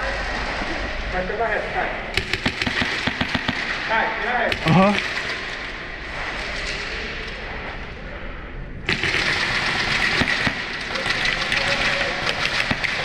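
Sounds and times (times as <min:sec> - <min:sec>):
muffled steady noise: 0:00.0 - 0:13.0
airsoft gun automatic fire: 0:02.2 - 0:05.6, 0:08.9 - 0:13.0.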